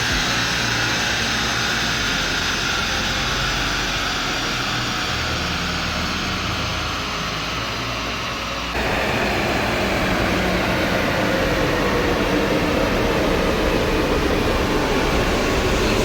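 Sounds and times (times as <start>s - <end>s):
engine and fan rush: 0.0s - 16.0s
car engine running: 8.8s - 16.0s.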